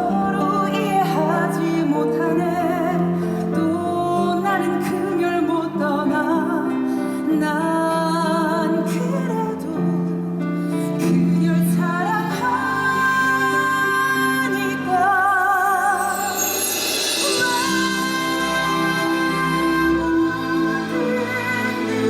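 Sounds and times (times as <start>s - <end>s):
person singing with vibrato: 0.0s - 22.0s
orchestral accompaniment: 15.9s - 22.0s.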